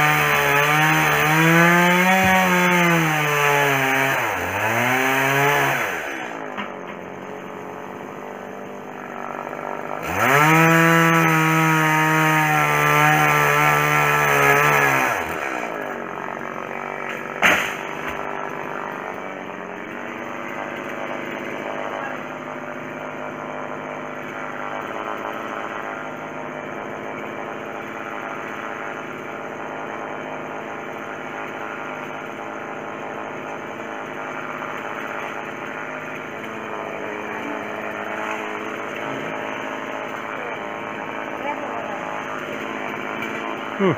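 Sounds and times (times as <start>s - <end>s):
chainsaw revving and idling: 0.0s - 43.9s
sharp knock: 17.4s - 18.2s.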